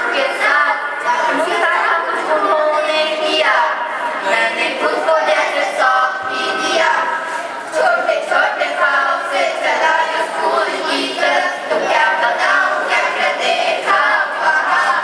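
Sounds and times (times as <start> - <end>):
children's choir singing: 0.0 - 15.0.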